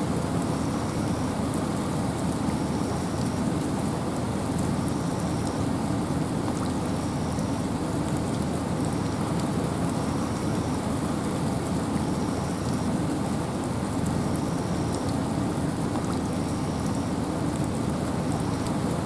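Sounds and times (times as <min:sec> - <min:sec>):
wind and rain rushing: 0:00.0 - 0:19.0
raindrop ticks: 0:08.1 - 0:10.7, 0:14.0 - 0:15.2, 0:15.8 - 0:18.9.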